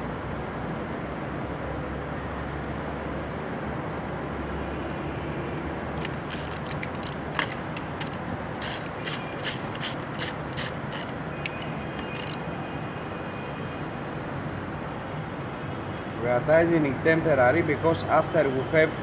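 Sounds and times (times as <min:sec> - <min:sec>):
ratchet wrench clicking: 0:06.0 - 0:12.5
steady workshop hum: 0:06.0 - 0:12.6.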